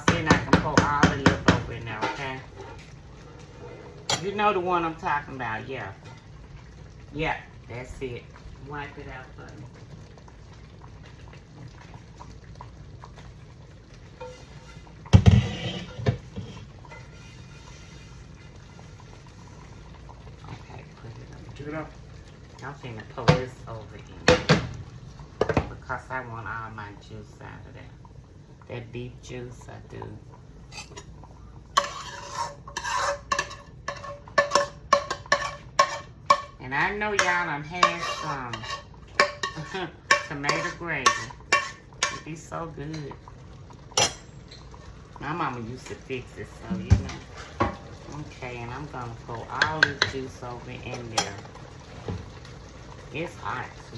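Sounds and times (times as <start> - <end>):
low steady simmer: 0.0 - 53.9
utensil scraping a metal pan: 14.2 - 18.9, 31.8 - 42.3.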